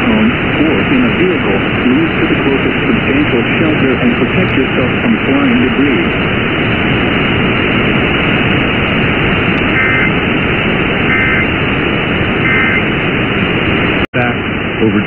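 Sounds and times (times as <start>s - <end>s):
radio static hiss: 0.0s - 15.0s
two-tone data bursts: 9.6s - 10.2s, 11.1s - 11.5s, 12.4s - 12.9s.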